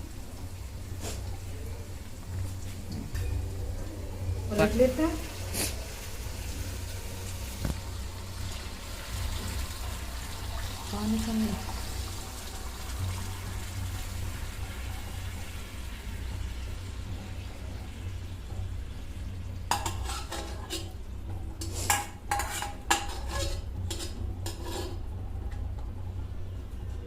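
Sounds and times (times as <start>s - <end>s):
spoon clinking and scraping pot: 19.7s - 21.0s, 21.6s - 25.1s.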